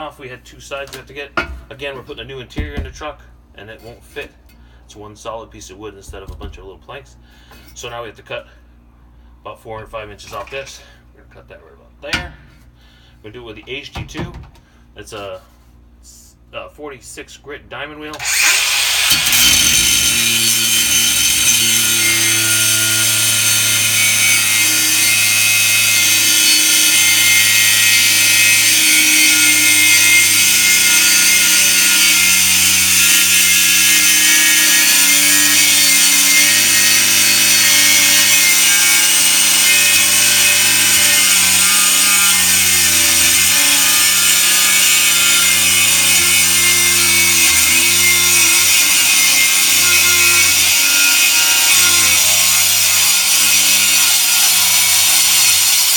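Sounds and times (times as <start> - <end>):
grinder cutting wood: 18.2 - 55.9.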